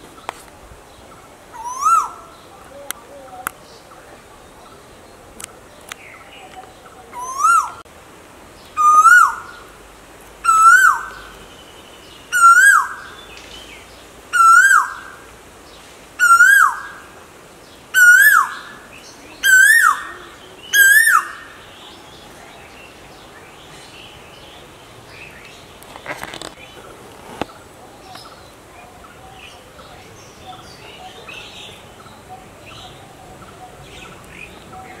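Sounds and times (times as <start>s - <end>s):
koel calling: 19.4s - 21.6s.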